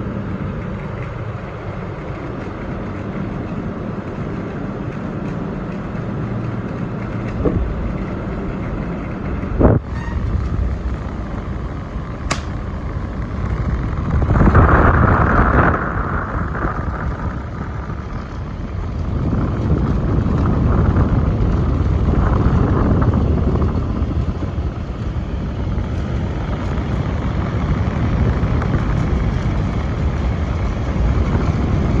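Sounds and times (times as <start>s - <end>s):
air conditioner droning: 0.0s - 32.0s
sharp click: 12.2s - 12.6s.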